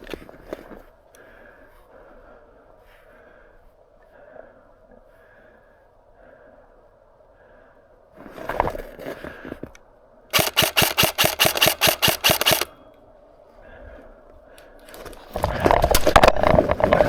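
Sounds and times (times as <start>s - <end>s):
airsoft gun rapid shots: 10.4s - 12.7s.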